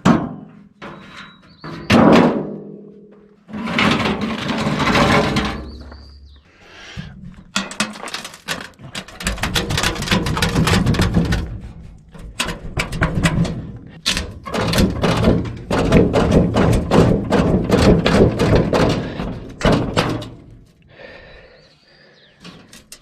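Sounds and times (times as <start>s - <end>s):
rapid knocks and thunks: 9.0s - 20.5s.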